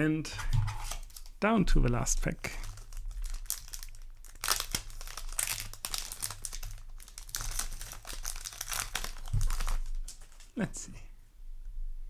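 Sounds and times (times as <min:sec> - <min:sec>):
foil wrapper crinkling: 0:00.7 - 0:01.4, 0:02.2 - 0:10.6.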